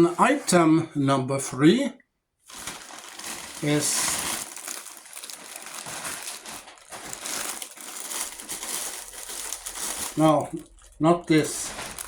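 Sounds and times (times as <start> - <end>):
packaging rustling: 2.5 - 12.0.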